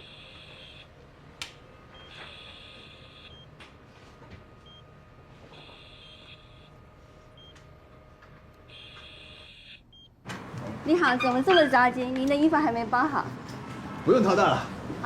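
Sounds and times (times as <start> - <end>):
patient monitor beeping: 1.9 - 3.6, 4.6 - 4.9, 5.5 - 6.8, 7.4 - 7.7, 8.7 - 10.2.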